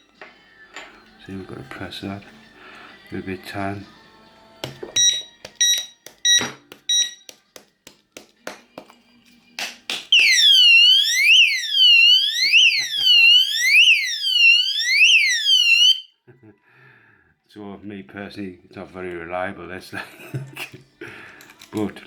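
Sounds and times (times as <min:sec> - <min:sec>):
alarm siren sweeping up and down: 0:10.2 - 0:16.1.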